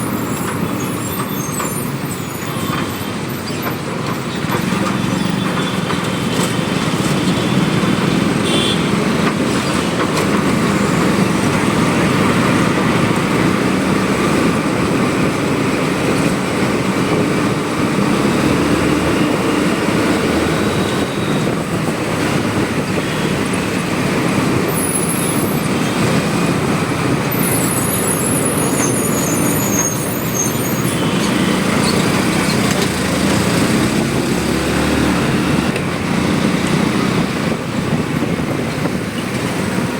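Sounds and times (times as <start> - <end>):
high-pitched squeaks: 0.0 - 5.8, 24.7 - 26.0, 27.3 - 32.8
road and wind noise: 0.0 - 39.9.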